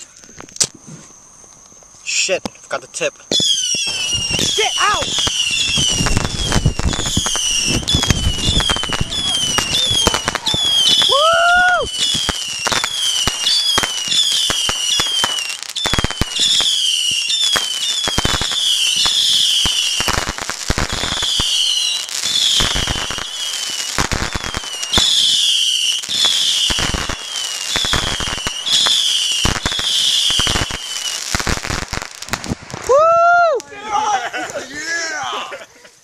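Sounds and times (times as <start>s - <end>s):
crackle of small pops: 0.0s - 0.8s, 1.4s - 2.7s, 3.3s - 4.5s
firework falling whistles: 3.3s - 34.5s.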